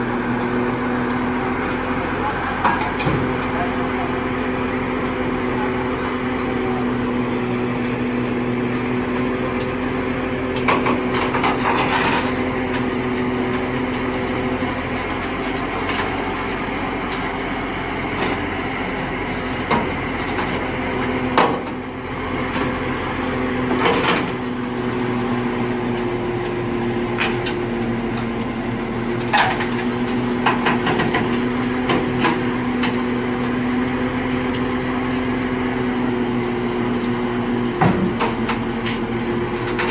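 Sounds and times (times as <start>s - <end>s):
knocks and clanks: 37.8s - 39.0s.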